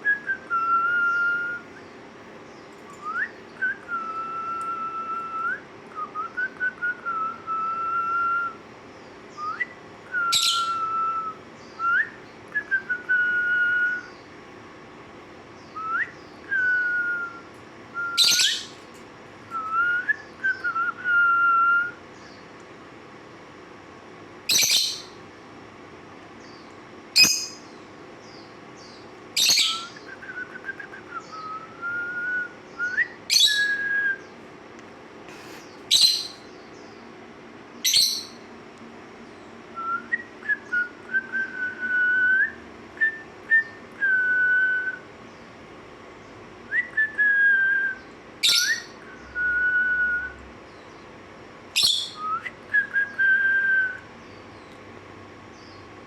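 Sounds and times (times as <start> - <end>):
whistled bird notes: 0.0 - 1.9, 2.6 - 8.6, 9.3 - 14.3, 15.6 - 18.8, 24.5 - 25.2, 27.2 - 34.4, 35.4 - 37.1, 37.8 - 38.4, 46.7 - 51.0, 51.8 - 54.8
shrill bird chirps: 9.0 - 14.3, 18.0 - 18.8, 24.5 - 25.2, 26.4 - 31.8, 32.7 - 34.4, 35.4 - 37.1, 37.8 - 38.5, 47.8 - 51.1, 51.8 - 54.8.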